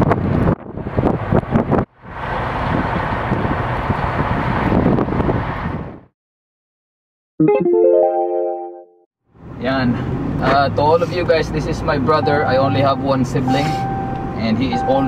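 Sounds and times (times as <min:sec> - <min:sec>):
storm wind blowing on microphone: 0:00.0 - 0:06.1
short musical chord: 0:07.4 - 0:09.0.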